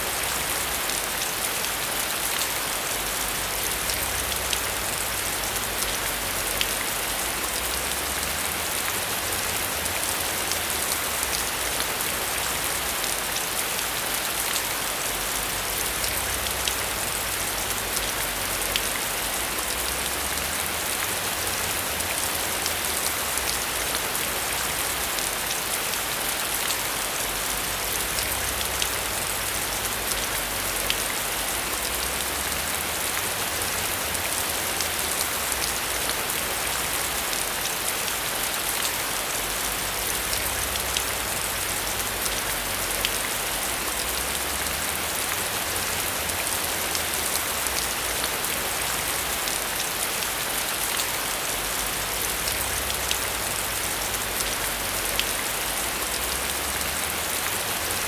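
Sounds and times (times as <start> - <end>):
heavy rain on a metal roof: 0.0 - 58.0.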